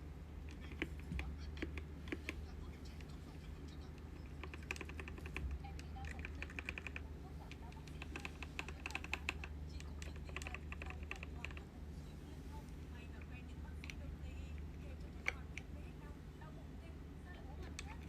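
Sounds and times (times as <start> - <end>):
low steady hum: 0.0 - 18.0
mechanical keyboard typing: 0.5 - 2.4, 4.2 - 11.7, 15.0 - 15.7, 17.6 - 18.0.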